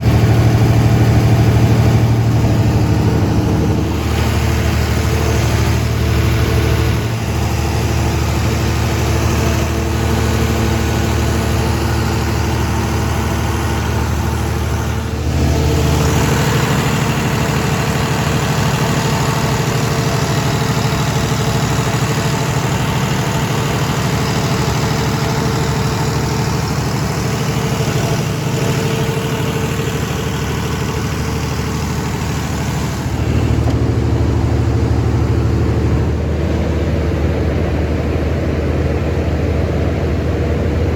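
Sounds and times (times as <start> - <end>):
diesel generator running: 0.0 - 40.9.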